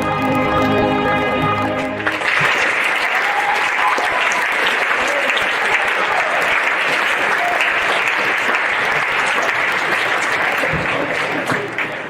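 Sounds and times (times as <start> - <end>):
large crowd applauding: 1.7 - 12.0.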